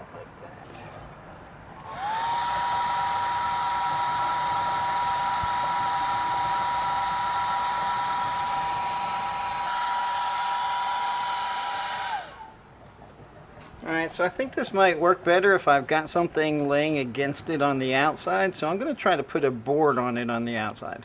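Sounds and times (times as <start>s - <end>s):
hair dryer whining and blowing: 1.8s - 12.6s.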